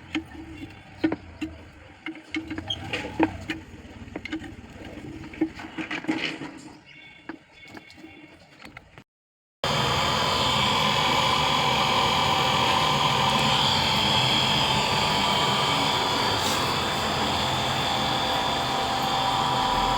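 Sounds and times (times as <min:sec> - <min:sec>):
electric pump motor running: 0:09.6 - 0:19.9.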